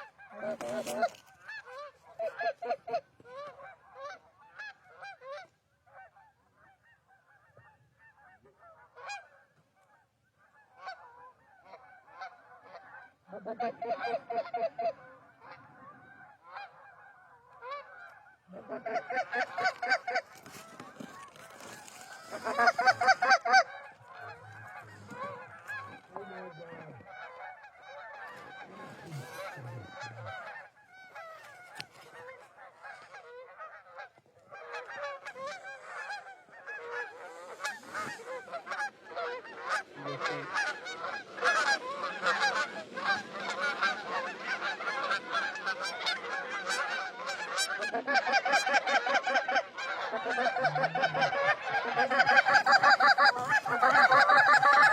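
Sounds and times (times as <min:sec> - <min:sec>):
geese honking: 0:00.0 - 0:54.9.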